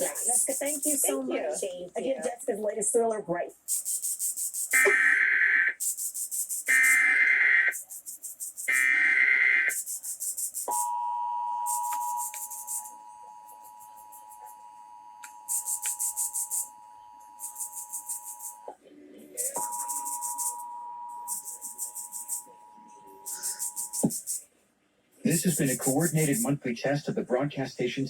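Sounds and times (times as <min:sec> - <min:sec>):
screeching data bursts: 0:00.0 - 0:01.1, 0:03.7 - 0:11.0, 0:11.6 - 0:18.7, 0:19.4 - 0:24.4, 0:25.3 - 0:26.5
two-tone attention signal: 0:10.7 - 0:16.2, 0:19.4 - 0:24.0.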